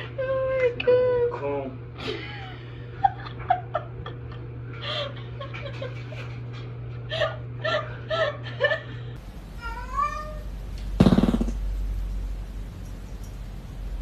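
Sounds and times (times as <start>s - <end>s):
cat meowing: 9.6s - 10.5s.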